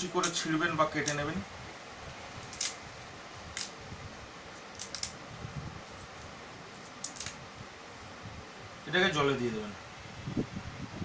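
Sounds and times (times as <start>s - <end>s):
leaves snapping: 0.1s - 1.3s, 2.4s - 2.8s, 3.5s - 3.8s, 4.5s - 5.2s, 5.9s - 7.4s.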